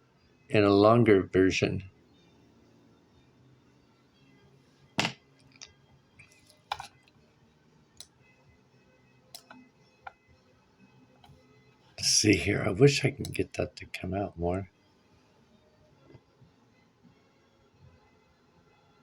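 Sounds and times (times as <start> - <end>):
faint low hum: 6.0 - 19.0
sharp clicks: 9.4 - 9.6.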